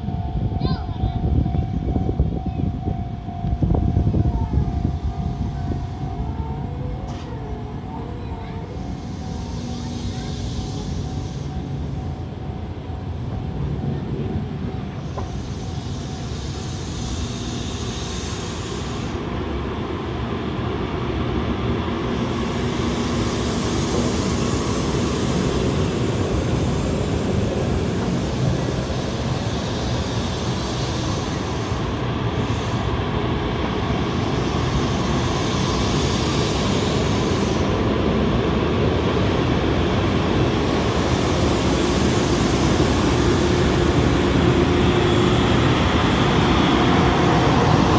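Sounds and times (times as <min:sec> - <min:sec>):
wheels rumbling on rail: 0:00.0 - 0:47.9
high hiss: 0:08.8 - 0:11.8, 0:15.0 - 0:19.4, 0:21.9 - 0:47.9.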